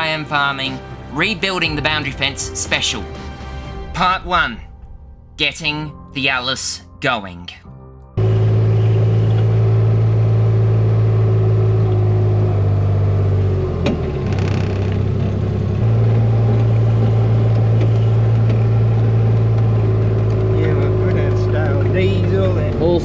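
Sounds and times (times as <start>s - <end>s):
diesel engine running: 8.2s - 23.0s.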